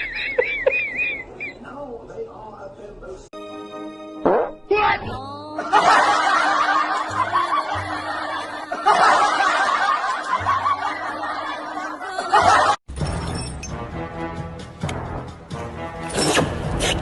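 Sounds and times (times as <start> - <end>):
people laughing: 0.0 - 1.6, 5.6 - 12.8
background music: 3.4 - 17.0.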